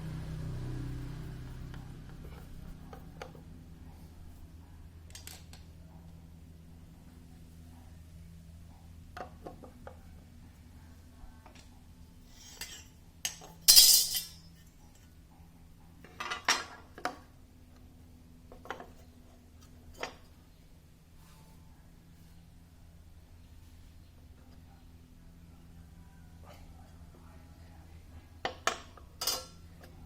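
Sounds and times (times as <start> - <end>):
metal parts clinking and knocking: 12.5 - 14.6, 29.2 - 29.6.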